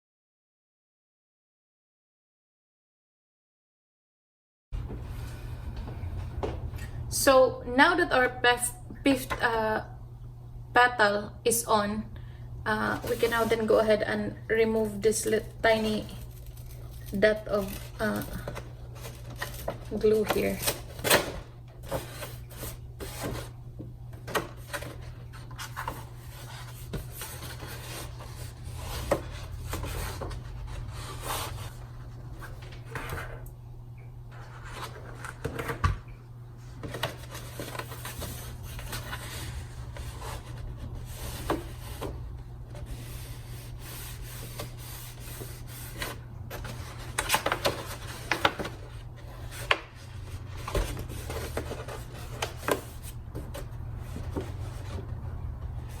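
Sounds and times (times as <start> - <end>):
steady low hum: 4.8 - 56.0
cardstock rustling: 12.9 - 14.0, 14.6 - 33.5, 34.3 - 56.0.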